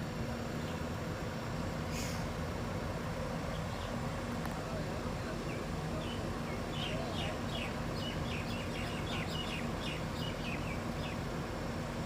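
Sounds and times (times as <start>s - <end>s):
low engine hum: 0.0s - 12.0s
small bird chirping: 5.5s - 11.2s.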